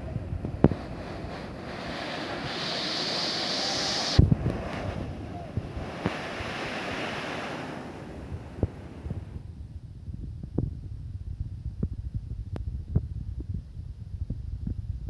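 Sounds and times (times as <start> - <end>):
wind on microphone: 0.0 - 15.0
waterfall rushing: 0.7 - 9.0.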